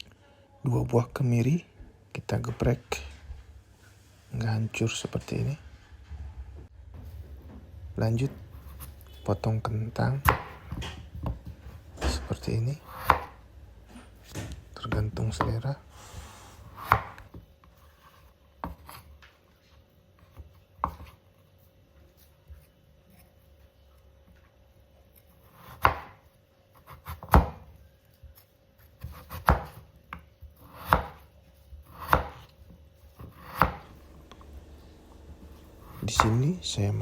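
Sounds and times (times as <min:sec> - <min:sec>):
knife chopping on cutting board: 0:10.1 - 0:11.6, 0:12.8 - 0:13.4, 0:16.6 - 0:17.4, 0:20.3 - 0:21.2, 0:25.2 - 0:27.7, 0:28.9 - 0:37.0.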